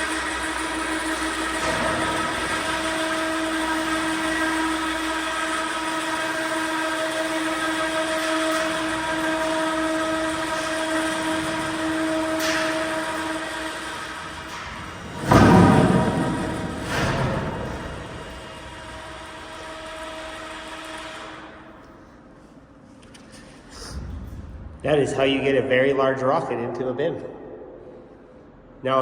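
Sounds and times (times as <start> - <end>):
tractor engine running: 0.0 - 21.3
constant whine: 0.0 - 26.5.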